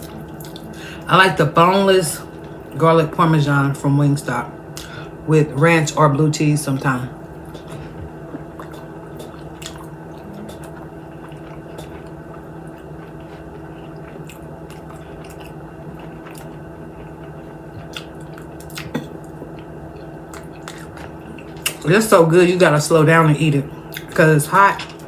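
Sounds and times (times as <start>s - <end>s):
wet chewing and lip-smacking: 0.0s - 0.7s, 7.3s - 21.9s
steady low hum: 0.0s - 25.0s.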